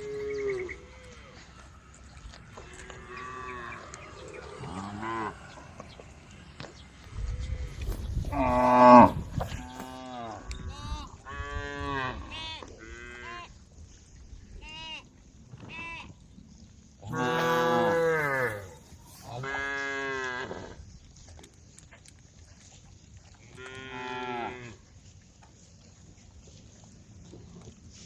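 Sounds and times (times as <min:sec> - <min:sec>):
cattle mooing: 0:02.6 - 0:05.8, 0:08.3 - 0:10.5, 0:17.1 - 0:20.5.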